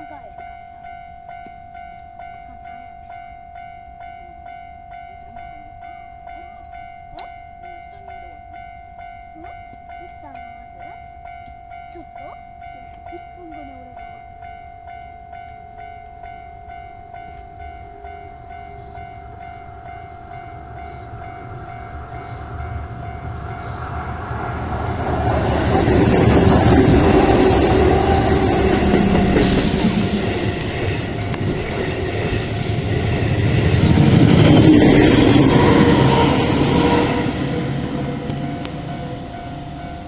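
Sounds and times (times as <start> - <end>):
level crossing warning bell: 0.0 - 40.0
electric train passing: 8.4 - 40.0.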